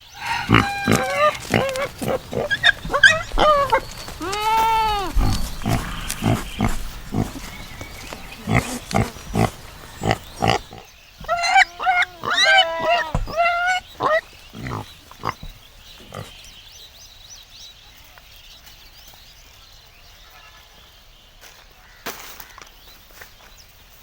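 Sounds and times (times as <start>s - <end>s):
pigs grunting and squealing: 0.1s - 16.4s.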